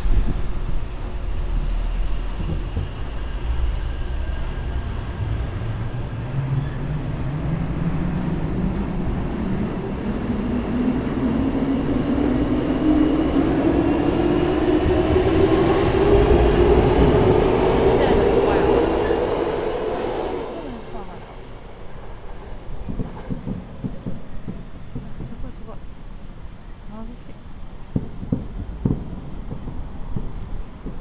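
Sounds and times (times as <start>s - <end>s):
electric train motor whine: 11.9s - 21.0s.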